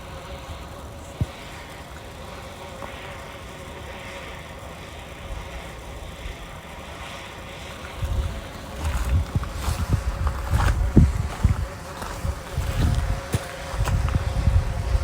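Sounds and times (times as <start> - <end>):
faint steady hum: 0.0 - 15.0
wind buffeting microphone: 7.4 - 15.0.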